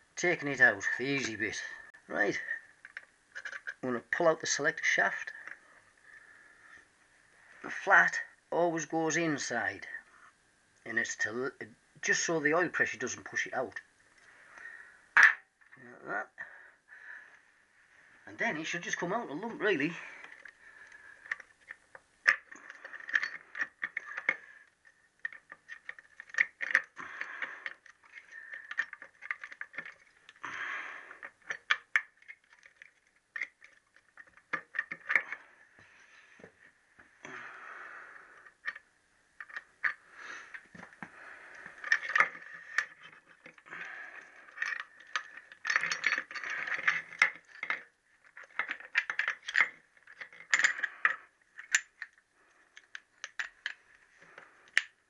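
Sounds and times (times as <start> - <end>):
metallic clinks and scraping: 0.4 - 3.8, 18.3 - 30.4, 31.1 - 36.7, 39.4 - 55.0.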